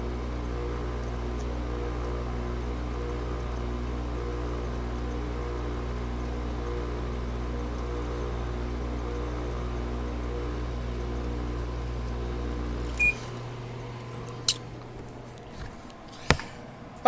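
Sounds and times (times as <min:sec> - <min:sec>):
air conditioner humming: 0:00.0 - 0:17.0
short electronic beep: 0:13.0 - 0:13.3.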